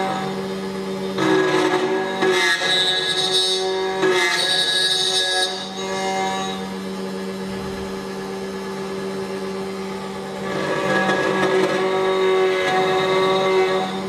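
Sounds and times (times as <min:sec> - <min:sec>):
key cutting machine humming: 0:06.6 - 0:14.0.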